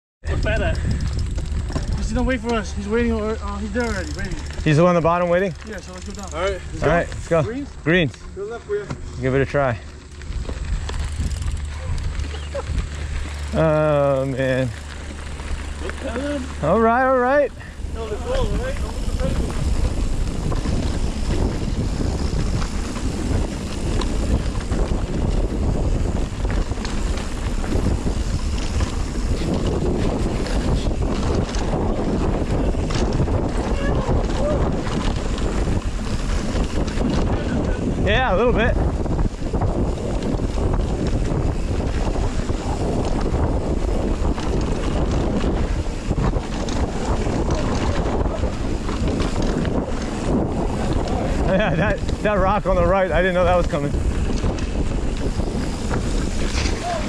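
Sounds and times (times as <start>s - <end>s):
heavy rumble: 0.2s - 57.0s
wind on microphone: 0.2s - 57.0s
whitewater roaring: 56.4s - 57.0s.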